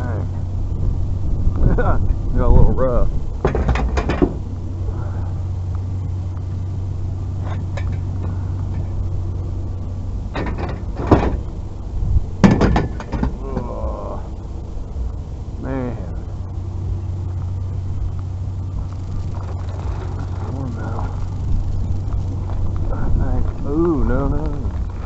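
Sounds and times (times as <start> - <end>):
vehicle engine humming: 0.0 - 25.0
sharp knocks and clanks: 3.4 - 4.4, 10.3 - 11.5, 12.4 - 13.8.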